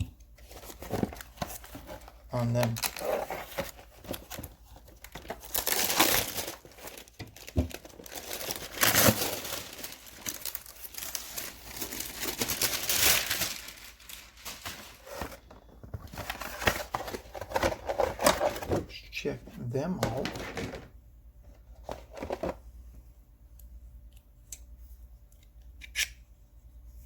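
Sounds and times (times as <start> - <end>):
packaging rustling: 0.4 - 18.9.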